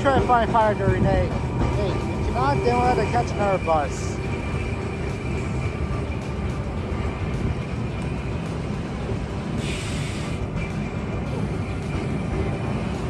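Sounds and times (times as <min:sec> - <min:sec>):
tram wheels and motors rumbling: 0:00.0 - 0:13.0.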